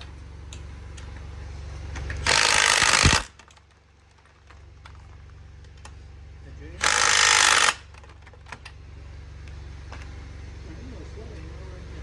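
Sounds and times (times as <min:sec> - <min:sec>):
steady low hum: 0:00.0 - 0:12.0
impact wrench burst: 0:02.2 - 0:03.5, 0:06.8 - 0:08.0.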